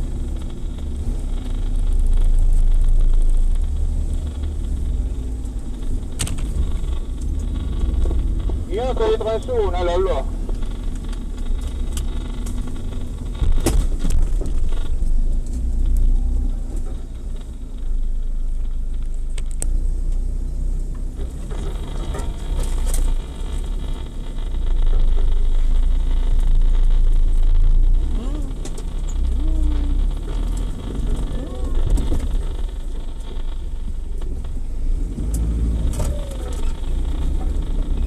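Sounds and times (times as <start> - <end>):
engine rumbling: 0.0 - 38.0.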